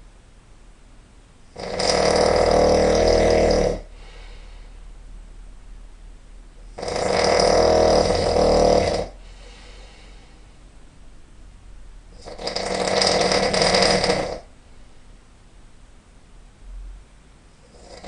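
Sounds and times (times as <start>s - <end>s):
person snoring loudly: 1.5s - 4.3s, 6.6s - 9.7s, 12.2s - 14.5s, 17.6s - 18.0s
quiet breathing: 3.7s - 5.1s, 9.0s - 10.7s, 14.3s - 15.2s.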